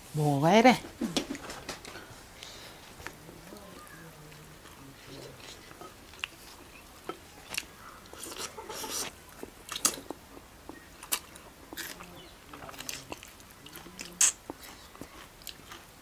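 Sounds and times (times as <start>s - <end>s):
person chewing: 2.4s - 16.0s
lip smacks: 5.6s - 12.0s.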